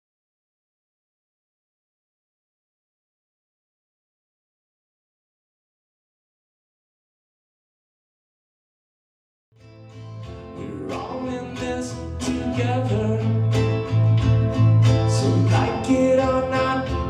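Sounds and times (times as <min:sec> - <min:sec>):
strummed acoustic guitar: 0:09.6 - 0:17.0
sustained low bass notes: 0:09.6 - 0:17.0.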